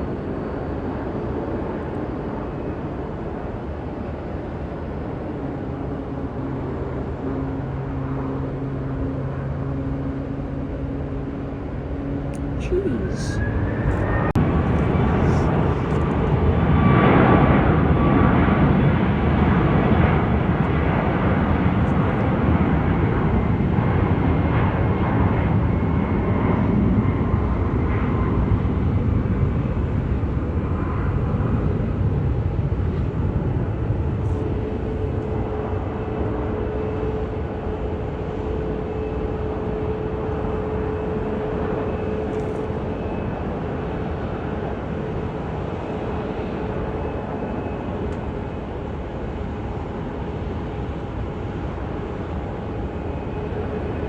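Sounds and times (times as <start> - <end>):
jet airliner engines roaring: 0.0 - 54.0.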